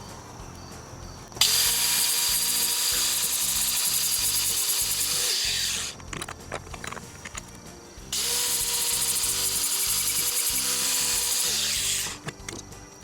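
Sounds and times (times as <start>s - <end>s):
power tool grinding steel: 1.4s - 6.0s, 8.1s - 12.3s.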